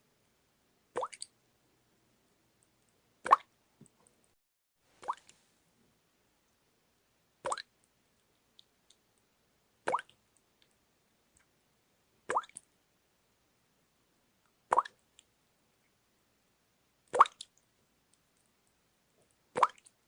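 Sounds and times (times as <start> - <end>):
water drops plopping into water: 1.0 - 1.3, 3.3 - 3.5, 7.4 - 7.7, 9.9 - 10.2, 12.3 - 12.7, 14.7 - 15.0, 17.1 - 17.5, 19.6 - 20.0.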